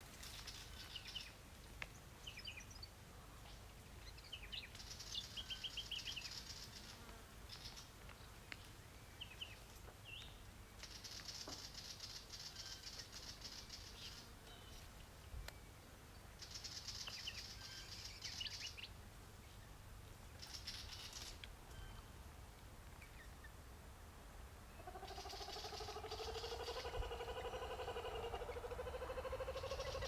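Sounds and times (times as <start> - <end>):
bird chirping: 24.8 - 30.0.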